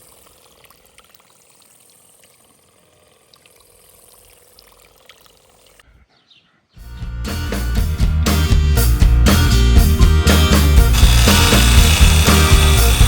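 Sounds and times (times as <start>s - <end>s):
water trickling and lapping: 0.0s - 5.8s.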